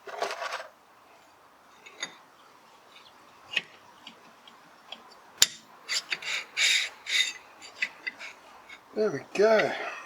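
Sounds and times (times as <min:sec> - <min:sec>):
tools and metal parts clicking: 0:03.0 - 0:08.8.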